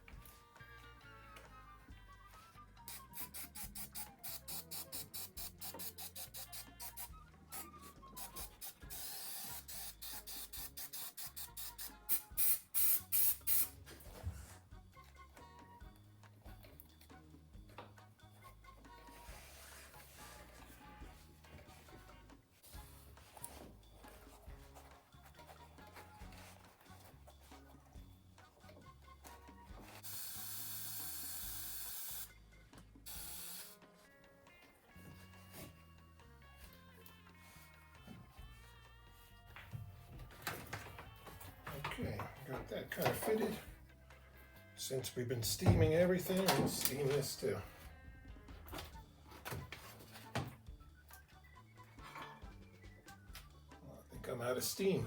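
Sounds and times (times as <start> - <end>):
aerosol spray hissing: 2.9 - 13.9, 29.9 - 32.3, 33.1 - 33.8
music with bass and plucked guitar: 34.1 - 55.0.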